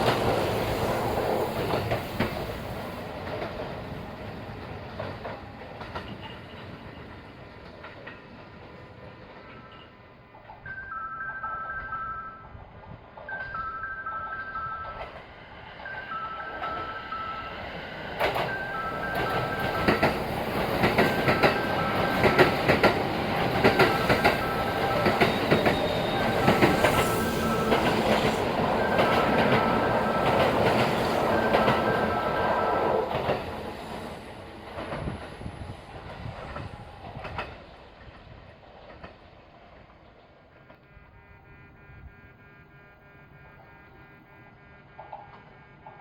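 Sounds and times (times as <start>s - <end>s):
electric train passing: 0.0s - 46.0s
two-note electronic signal: 40.9s - 45.9s.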